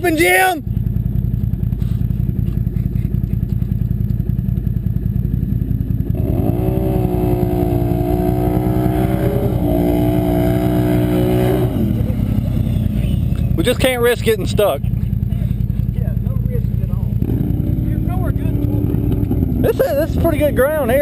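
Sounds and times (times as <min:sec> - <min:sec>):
low engine idle: 0:00.0 - 0:08.5, 0:11.6 - 0:21.0
engine revving at full throttle: 0:05.6 - 0:14.9, 0:16.5 - 0:21.0.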